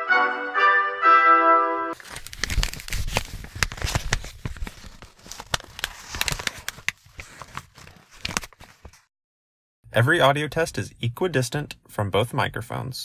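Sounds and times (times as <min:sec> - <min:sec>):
brass note: 0:00.0 - 0:02.0
crinkling and crackling: 0:02.0 - 0:09.1.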